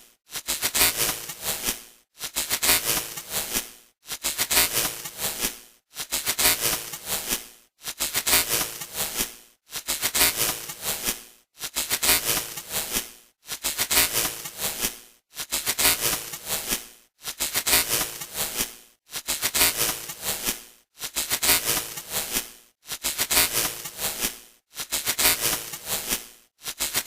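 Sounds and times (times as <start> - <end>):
crackling static bursts: 24.9 - 27.0.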